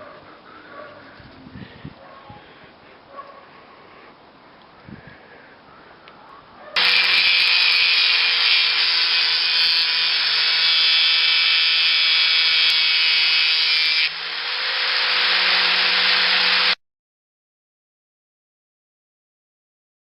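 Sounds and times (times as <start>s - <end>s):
power tool running: 6.8s - 16.8s.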